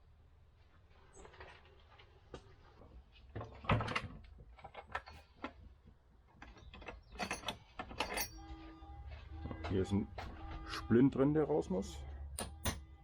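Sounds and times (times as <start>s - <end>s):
hand tools and metal parts clinking: 3.4s - 10.8s
low steady hum: 6.5s - 13.0s.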